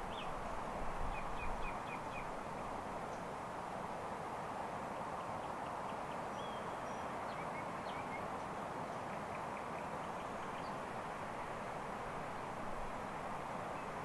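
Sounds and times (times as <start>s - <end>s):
songbird chirps: 0.0s - 0.4s, 1.0s - 2.4s, 4.9s - 10.9s
steady background hiss: 0.0s - 14.0s.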